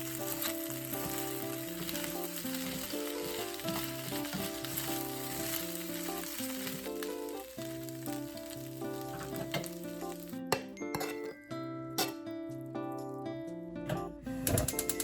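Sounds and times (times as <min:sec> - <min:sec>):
food sizzling in a frying pan: 0:00.0 - 0:11.3
background music: 0:00.0 - 0:15.0.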